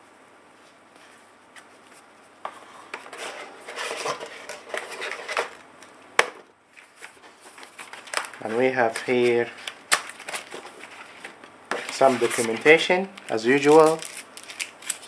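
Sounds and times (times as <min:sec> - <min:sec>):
packaging rustling: 0:03.2 - 0:05.6, 0:06.8 - 0:15.0.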